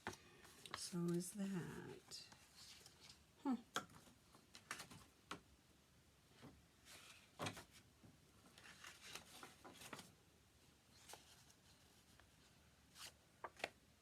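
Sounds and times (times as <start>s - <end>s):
paper scraps rustling and tapping: 8.4s - 10.1s.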